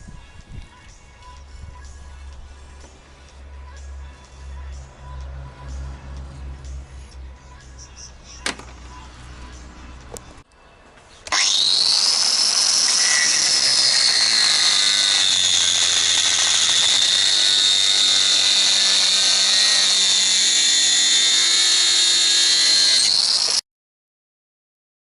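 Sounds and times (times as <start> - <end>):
power tool high-pitched whine: 11.3 - 23.6.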